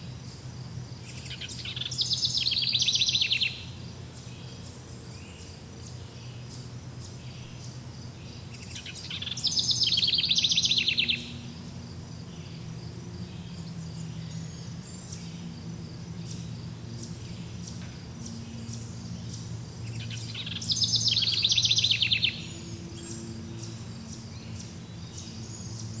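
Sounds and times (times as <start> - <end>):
songbird trilling: 0.2 - 26.0
faint bird chirps: 1.0 - 11.6, 16.2 - 26.0.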